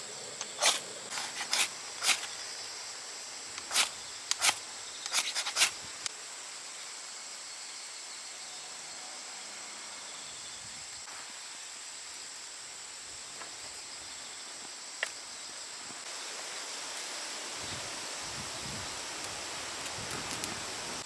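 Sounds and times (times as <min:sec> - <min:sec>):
campfire crackling: 0:00.0 - 0:02.6
outdoor background hiss: 0:00.0 - 0:21.0.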